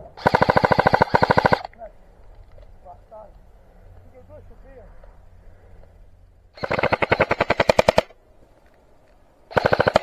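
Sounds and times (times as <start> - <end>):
airsoft gun full auto firing: 0.2 - 1.7, 6.6 - 8.2, 9.5 - 10.0.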